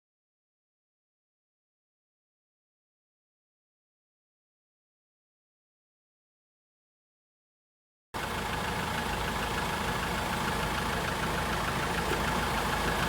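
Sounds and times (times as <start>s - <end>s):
diesel engine idling: 8.2s - 13.0s.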